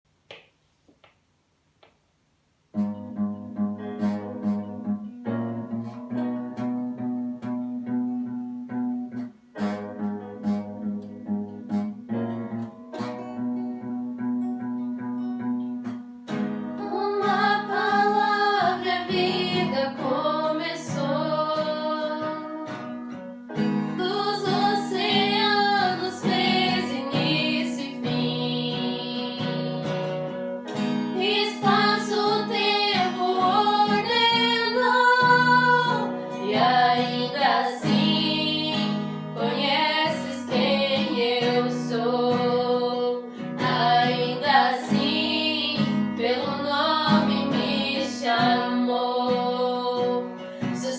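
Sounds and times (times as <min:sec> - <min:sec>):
acoustic guitar: 0:00.1 - 0:50.9
woman singing: 0:16.8 - 0:23.0, 0:23.9 - 0:30.2, 0:31.2 - 0:50.9.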